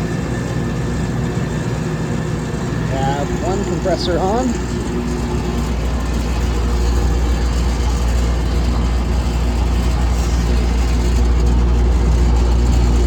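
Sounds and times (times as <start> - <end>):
chiller compressor humming: 0.0 - 13.0.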